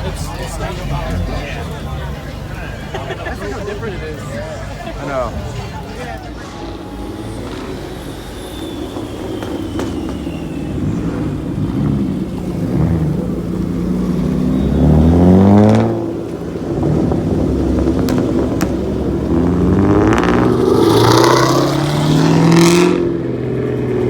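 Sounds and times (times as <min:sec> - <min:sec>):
car engines running: 0:00.0 - 0:24.0
car engine revving hard: 0:05.1 - 0:24.0.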